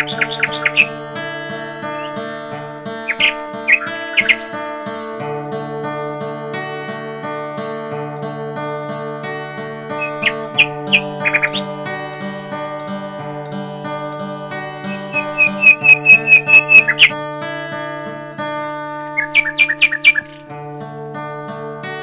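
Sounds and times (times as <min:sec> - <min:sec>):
bird chirps: 0:00.0 - 0:01.0, 0:01.8 - 0:02.2, 0:03.0 - 0:04.6, 0:10.0 - 0:11.7, 0:14.9 - 0:17.1, 0:19.2 - 0:20.4
acoustic guitar music: 0:00.0 - 0:22.0.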